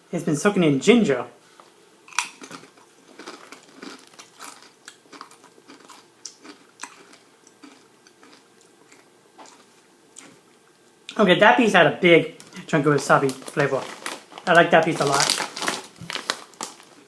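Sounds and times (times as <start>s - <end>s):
person chewing potato chips: 2.1s - 10.5s, 13.2s - 17.0s.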